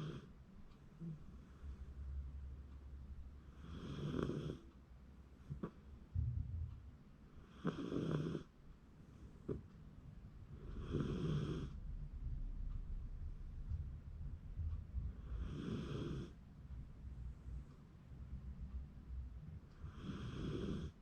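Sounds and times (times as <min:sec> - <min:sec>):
dog snoring: 0:00.0 - 0:00.3, 0:03.5 - 0:04.7, 0:07.4 - 0:08.5, 0:10.6 - 0:11.8, 0:15.1 - 0:16.4, 0:19.8 - 0:21.0.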